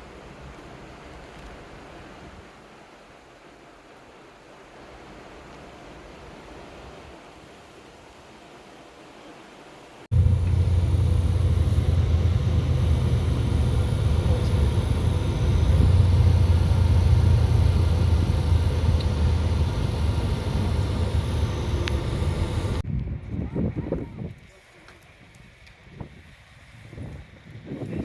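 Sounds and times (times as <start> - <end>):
faint steady tones: 10.1 - 22.8
vehicle engine running: 10.1 - 22.8.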